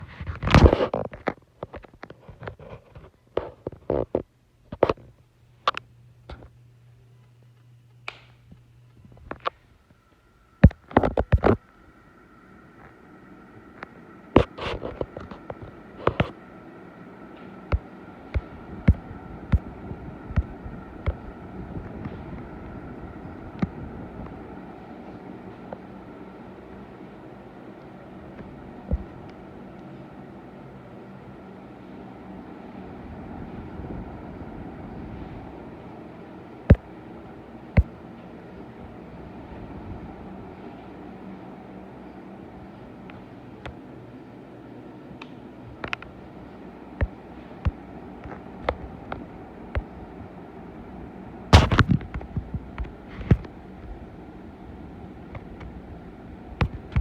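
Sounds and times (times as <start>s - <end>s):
ceiling fan whirring: 0.0s - 57.0s.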